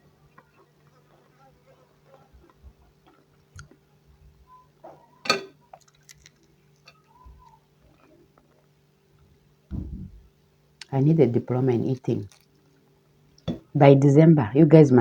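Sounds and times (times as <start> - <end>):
chewing and mouth noises: 0.2 - 8.8, 11.9 - 12.9.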